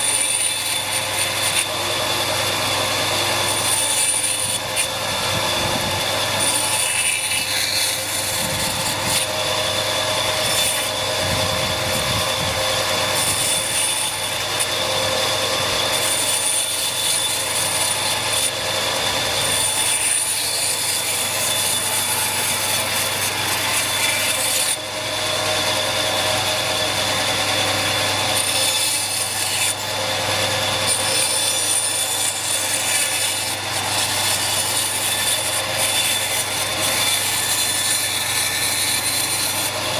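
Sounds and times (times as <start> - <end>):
power tool cutting wood: 0.0 - 39.9.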